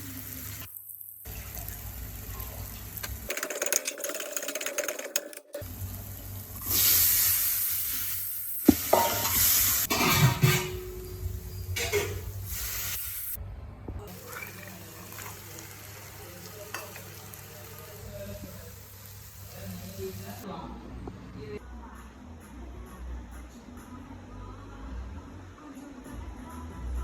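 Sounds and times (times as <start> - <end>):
potatoes sizzling in oil: 0.0 - 3.2, 5.6 - 9.9, 14.2 - 20.4.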